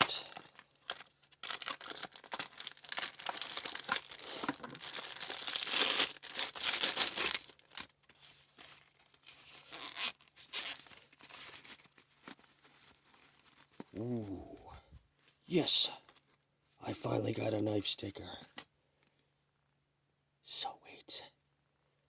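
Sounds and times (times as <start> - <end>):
packaging tearing and crinkling: 0.0 - 8.0.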